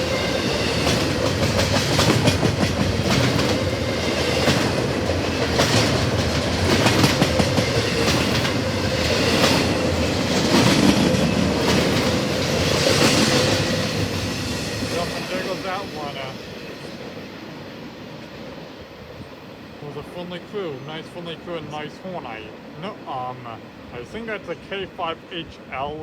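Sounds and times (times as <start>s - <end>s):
freight train wheels clacking: 0.0s - 17.2s
train rumble: 0.0s - 26.0s.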